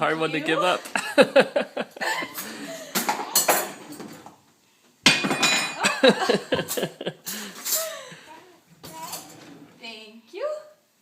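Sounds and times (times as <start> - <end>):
dishes and cutlery clinking: 2.2 - 4.4, 5.0 - 8.0, 8.8 - 9.7.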